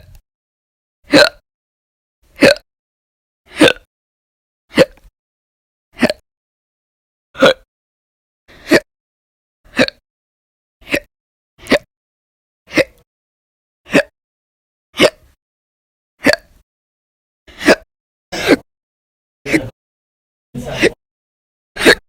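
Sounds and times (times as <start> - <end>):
woman hiccuping: 1.1 - 1.4, 2.4 - 2.6, 4.7 - 5.0, 6.0 - 6.2, 10.9 - 11.9, 15.0 - 15.3.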